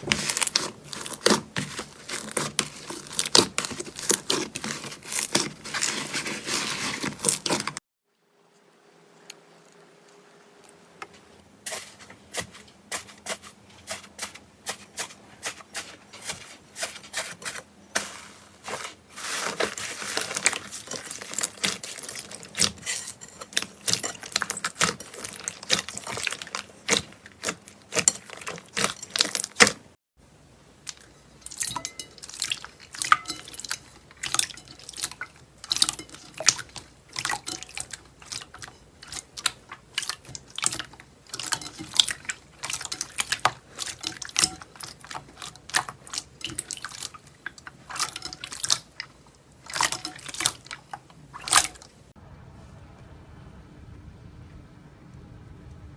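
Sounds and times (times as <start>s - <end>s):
slime squishing with wet pops: 0.0s - 7.8s, 18.7s - 29.9s, 30.8s - 52.1s.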